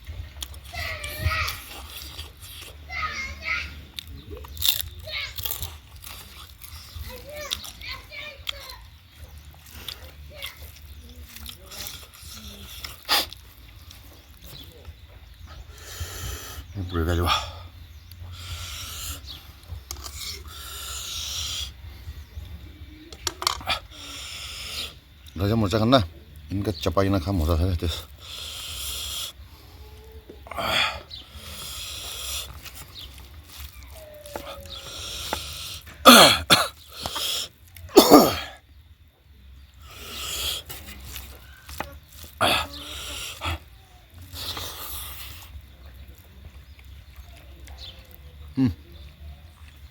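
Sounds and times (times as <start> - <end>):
wet eating clicks: 3.9 - 15.9, 31.4 - 37.9
man breathing hard and hissing: 15.5 - 22.2, 23.7 - 25.0, 28.0 - 29.8, 30.5 - 32.7, 34.8 - 37.5, 39.8 - 40.8
man coughing: 36.0 - 36.8, 37.9 - 38.6.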